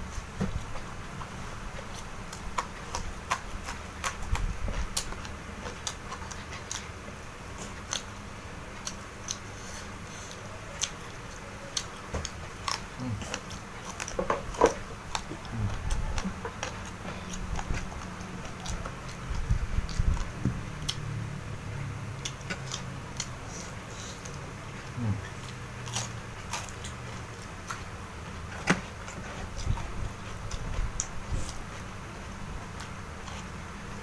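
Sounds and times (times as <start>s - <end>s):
person chewing food: 0.0s - 34.0s
mouth sounds: 12.9s - 13.6s, 15.2s - 16.4s, 24.8s - 25.6s.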